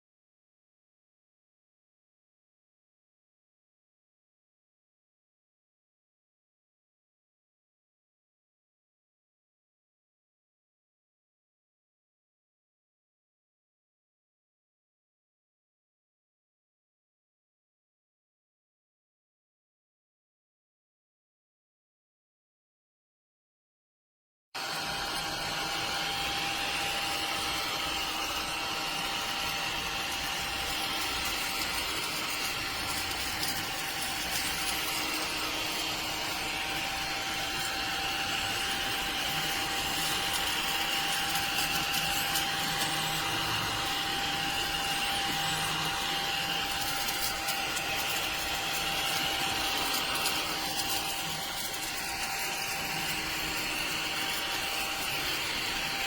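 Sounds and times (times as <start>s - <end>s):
small vacuum motor whining: 24.6s - 56.0s.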